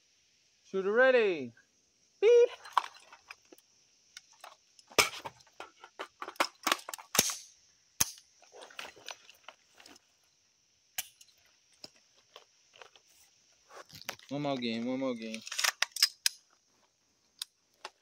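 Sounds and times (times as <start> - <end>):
magazines being swapped: 15.2 - 16.5.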